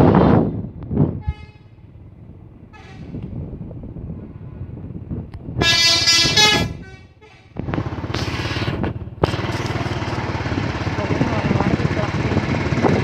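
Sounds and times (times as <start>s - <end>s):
bus engine running: 0.0s - 13.0s
bus horn multi-tone notes: 1.2s - 1.8s, 2.7s - 3.2s, 5.6s - 7.6s.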